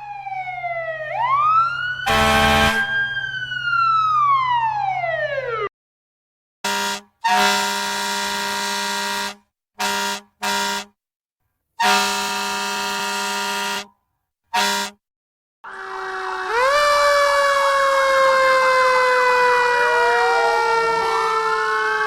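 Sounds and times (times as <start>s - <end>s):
vehicle air horn blasts: 2.1s - 3.0s, 6.6s - 11.0s, 11.8s - 15.0s.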